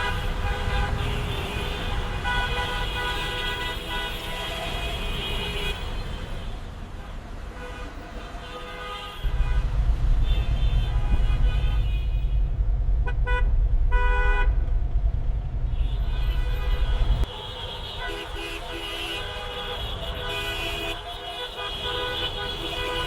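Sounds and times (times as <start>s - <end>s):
car horns honking: 0.0s - 14.7s, 15.6s - 23.0s
heavy low rumble: 9.2s - 17.3s.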